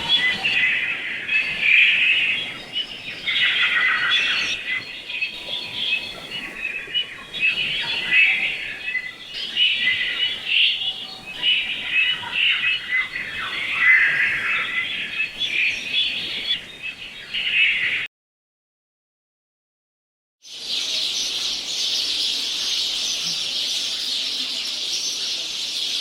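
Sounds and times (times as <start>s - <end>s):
flock of small birds chirping: 0.0s - 18.1s, 20.5s - 26.0s.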